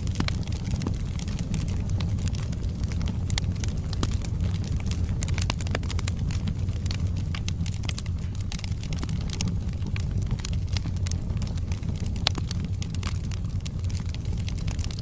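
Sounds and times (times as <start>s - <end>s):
flames roaring: 0.0s - 15.0s
logs crackling and popping: 0.0s - 15.0s.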